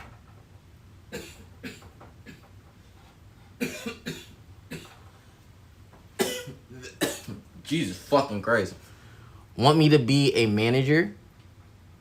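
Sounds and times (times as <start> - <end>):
steady low hum: 0.0 - 12.0
man coughing: 1.1 - 2.5, 3.6 - 5.0, 6.2 - 7.5.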